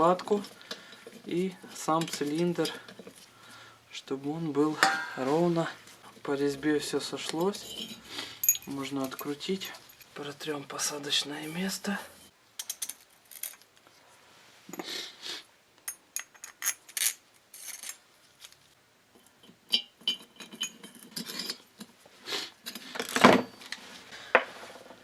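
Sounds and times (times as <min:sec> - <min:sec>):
metal parts and tools clinking: 0:07.2 - 0:10.2, 0:12.6 - 0:13.7, 0:15.9 - 0:18.6, 0:19.2 - 0:21.9.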